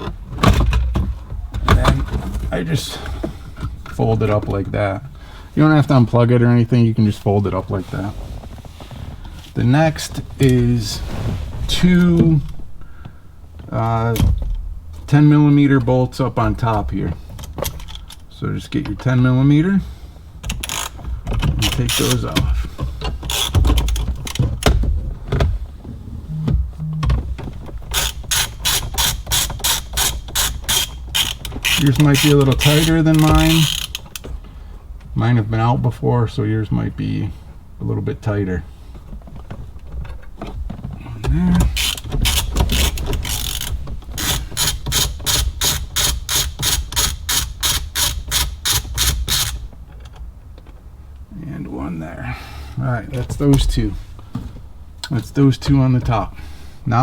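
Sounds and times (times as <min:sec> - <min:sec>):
ratchet wrench clicking: 0:20.5 - 0:21.0, 0:23.3 - 0:24.4, 0:27.9 - 0:34.2, 0:41.8 - 0:49.6.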